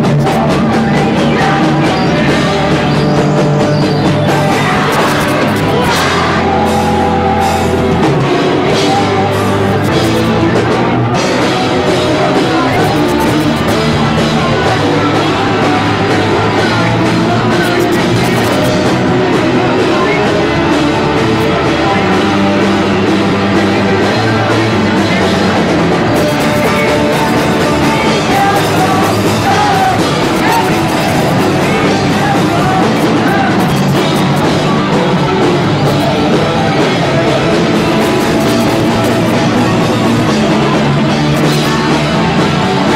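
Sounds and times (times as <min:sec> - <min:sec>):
rock band playing: 0:00.0 - 0:42.9.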